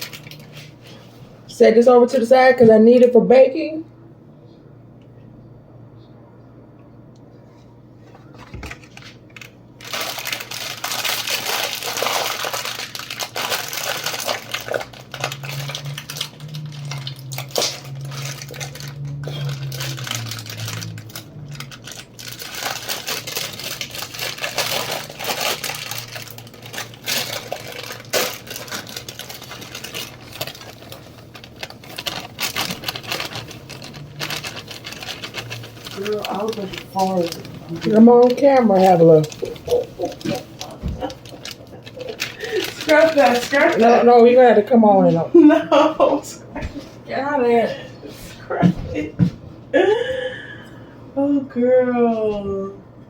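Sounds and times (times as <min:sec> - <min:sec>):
low steady hum: 0:00.0 - 0:53.0
kitchen items clattering: 0:08.2 - 0:47.0.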